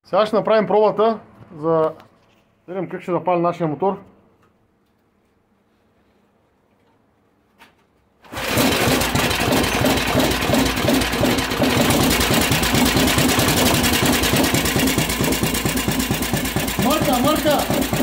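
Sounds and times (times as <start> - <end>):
small engine running: 8.3 - 18.0.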